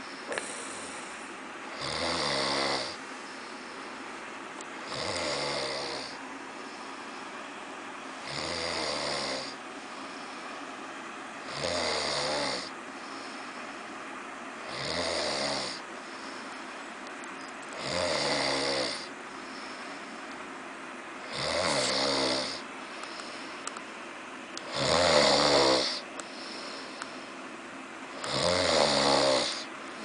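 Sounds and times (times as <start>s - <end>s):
snoring: 1.8s - 3.0s, 4.9s - 6.2s, 8.2s - 9.6s, 11.4s - 12.7s, 14.7s - 15.8s, 17.8s - 19.1s, 21.3s - 22.6s, 24.6s - 26.0s, 28.2s - 29.7s.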